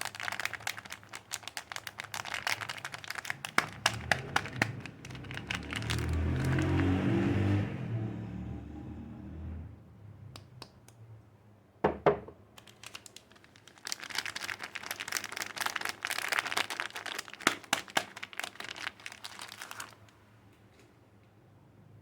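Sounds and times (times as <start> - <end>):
wrapper crinkling: 0.0 - 7.0, 12.6 - 20.2.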